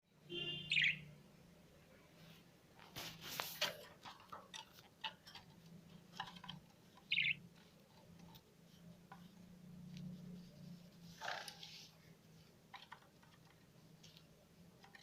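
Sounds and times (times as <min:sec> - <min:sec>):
small birds chirping: 0:00.3 - 0:01.2, 0:06.6 - 0:08.0.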